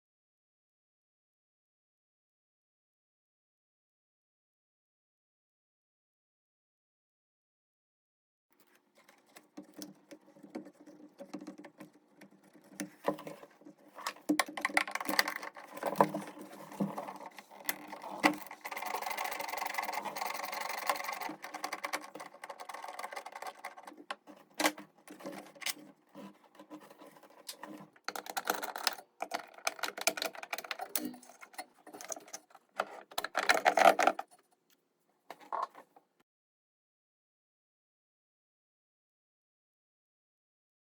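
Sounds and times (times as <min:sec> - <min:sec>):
metal tools clanking: 0:30.2 - 0:34.2.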